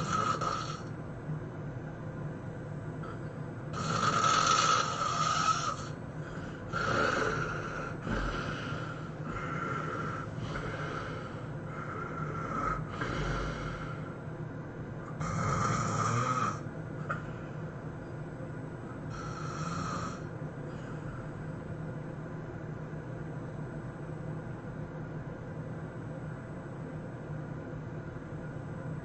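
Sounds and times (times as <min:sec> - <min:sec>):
person snoring hard: 0:00.0 - 0:00.9, 0:03.0 - 0:14.1, 0:15.1 - 0:16.6, 0:19.1 - 0:20.3.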